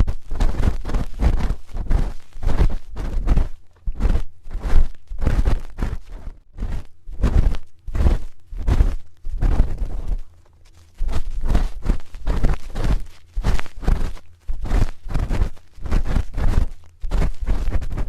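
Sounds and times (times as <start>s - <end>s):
spoon scraping microphone: 0.0s - 18.0s.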